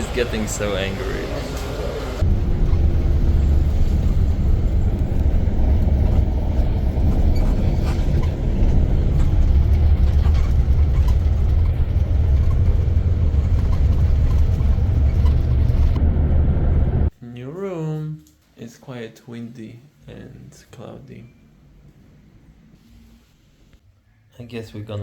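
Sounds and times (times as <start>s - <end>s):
bus engine and road rumble: 0.0s - 17.1s.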